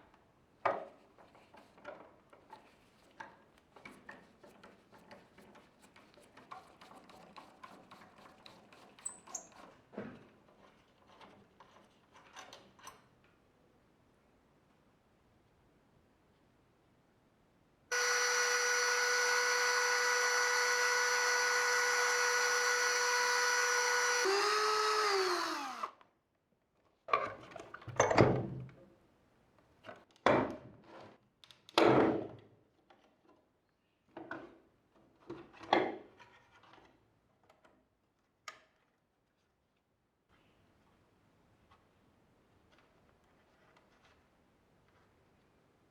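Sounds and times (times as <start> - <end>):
power drill running: 17.9 - 26.0.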